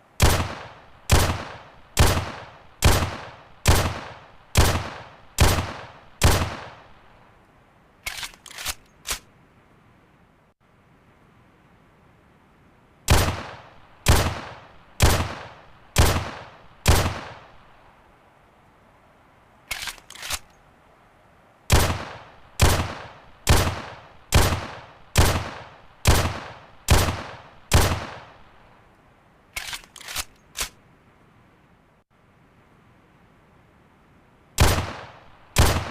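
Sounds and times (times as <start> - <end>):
pistol gunshots: 0.2 - 7.0, 13.1 - 17.6, 21.7 - 28.5, 34.6 - 35.9.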